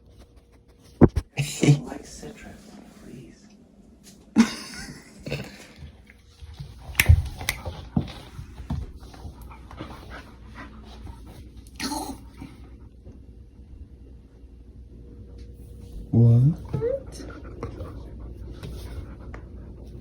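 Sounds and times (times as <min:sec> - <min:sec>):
dog panting: 0:05.8 - 0:11.6, 0:16.6 - 0:20.0.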